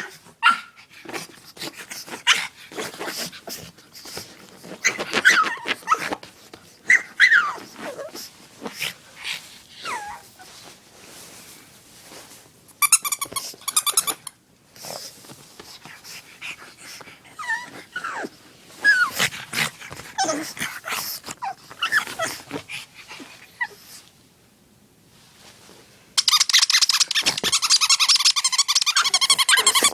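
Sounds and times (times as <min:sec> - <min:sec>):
dog whining and whimpering: 0:04.7 - 0:06.2, 0:06.9 - 0:08.3, 0:09.8 - 0:10.5, 0:17.3 - 0:23.8, 0:26.3 - 0:29.9
quick squeaks: 0:26.2 - 0:29.9.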